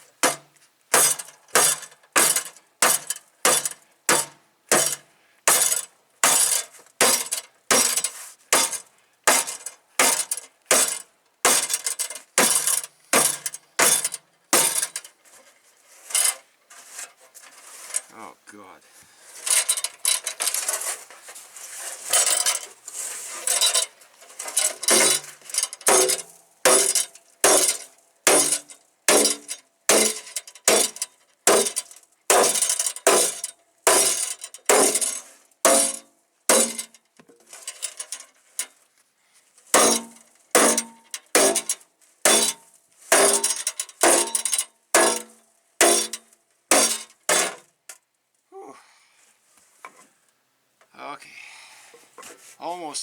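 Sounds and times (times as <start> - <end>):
sledgehammer clanging on metal: 1.0 - 15.1, 22.1 - 22.8, 23.4 - 36.9, 39.8 - 42.6, 43.2 - 47.6.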